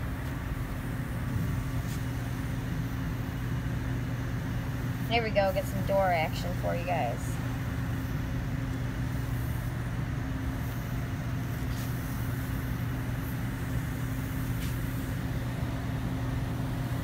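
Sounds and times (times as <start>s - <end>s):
machinery drone with low hum: 0.0s - 17.0s.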